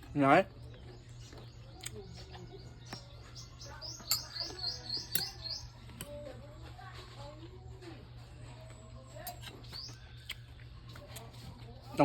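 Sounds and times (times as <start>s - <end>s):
small bird chirping: 0.2s - 6.2s, 9.2s - 10.7s.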